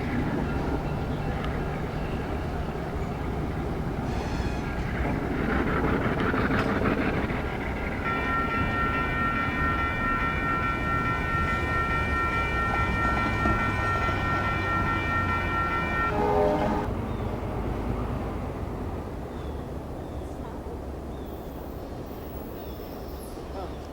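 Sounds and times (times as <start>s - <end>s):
train rumble: 0.0s - 23.9s
locomotive horn blast: 8.0s - 17.0s.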